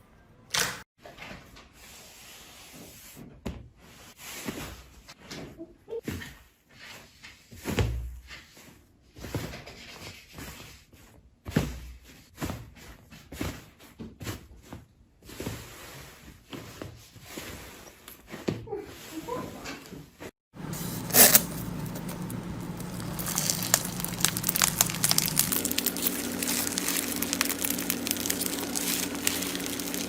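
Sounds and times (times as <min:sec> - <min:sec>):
slime squelching and popping: 0:21.0 - 0:30.0.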